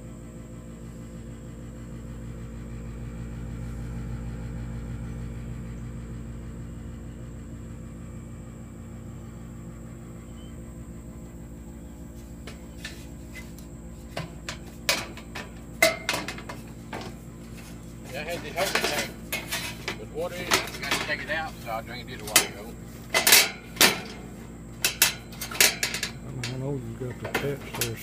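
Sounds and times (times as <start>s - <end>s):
steady low hum: 0.0s - 28.0s
metallic clinks and clanks: 22.2s - 28.0s.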